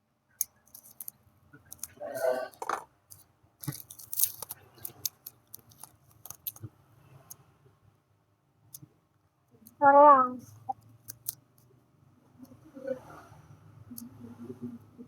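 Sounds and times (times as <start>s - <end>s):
paper crinkling and rustling: 3.6s - 6.7s.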